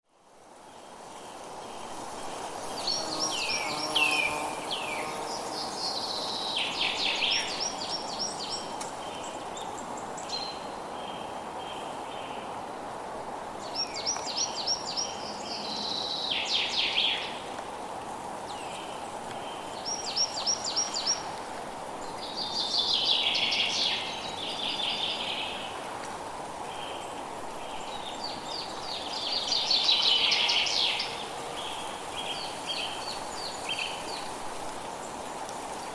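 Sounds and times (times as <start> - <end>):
steady background hiss: 0.1 - 35.9
songbird singing: 2.8 - 12.5, 13.6 - 17.5, 18.5 - 21.3, 22.0 - 25.8, 26.7 - 34.4.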